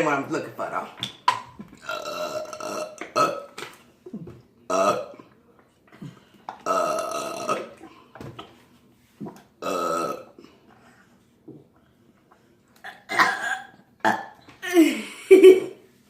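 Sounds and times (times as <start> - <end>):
person burping loudly: 1.8 - 5.4, 6.0 - 8.0, 9.2 - 10.4, 12.8 - 15.0.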